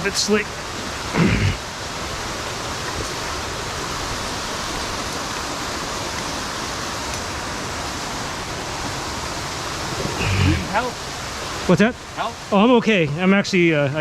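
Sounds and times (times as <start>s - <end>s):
flowing creek water: 0.0s - 14.0s.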